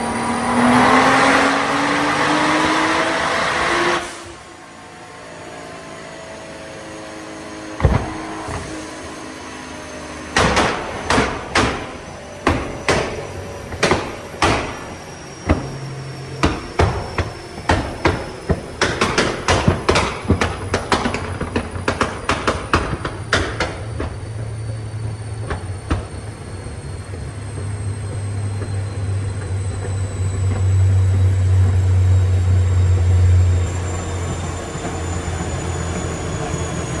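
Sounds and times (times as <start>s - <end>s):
low engine drone: 0.0s - 37.0s
exhaust banging and popping: 7.8s - 9.2s, 10.4s - 37.0s.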